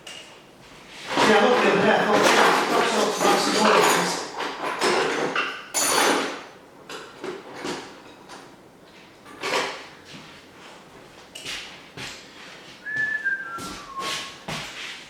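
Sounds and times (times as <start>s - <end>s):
tools scraping and clunking: 0.8s - 10.3s.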